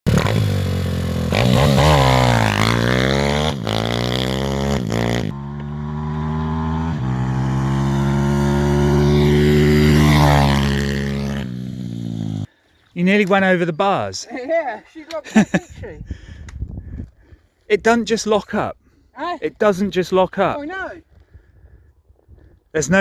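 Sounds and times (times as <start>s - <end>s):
motorbike engine revving: 0.1s - 12.5s.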